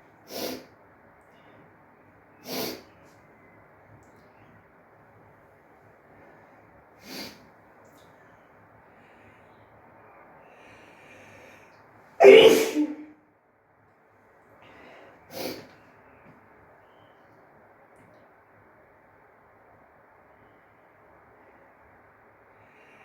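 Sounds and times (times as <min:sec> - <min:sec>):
woman sneezing: 0:12.2 - 0:13.1.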